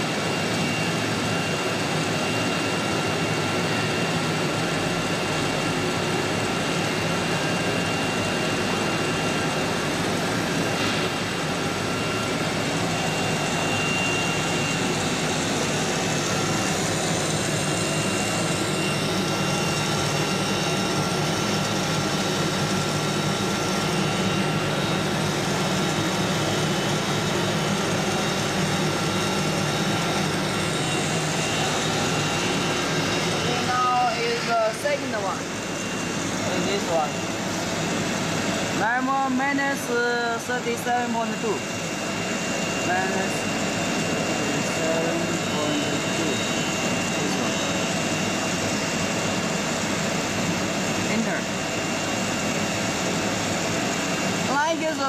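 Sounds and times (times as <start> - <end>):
router machine drone: 0.0 - 55.0
high whining tones: 7.5 - 54.1.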